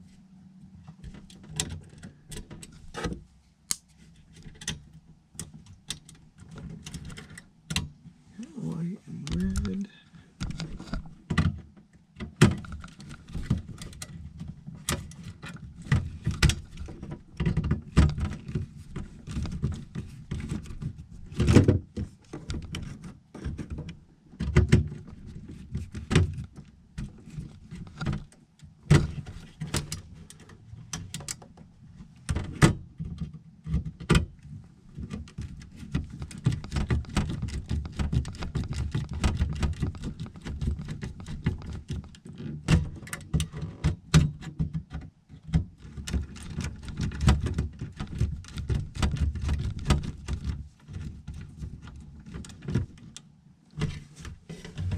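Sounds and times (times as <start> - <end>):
hands clicking wire connectors: 3.7 - 4.8, 5.4 - 7.9.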